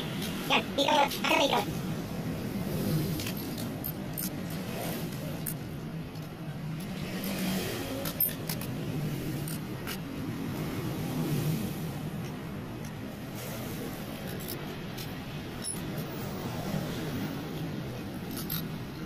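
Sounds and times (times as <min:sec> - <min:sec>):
vehicle engine hum: 0:00.0 - 0:19.0.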